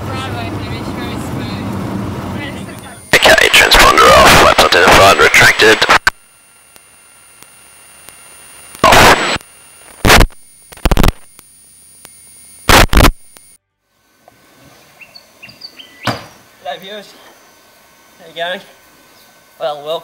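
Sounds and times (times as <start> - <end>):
thin steady whines: 0.0 - 20.0
loud bursts of static: 0.6 - 13.6
radio static hiss: 2.4 - 13.6.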